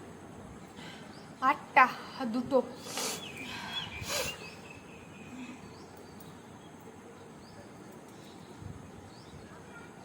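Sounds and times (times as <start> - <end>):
short breathy burst: 2.8 - 4.5.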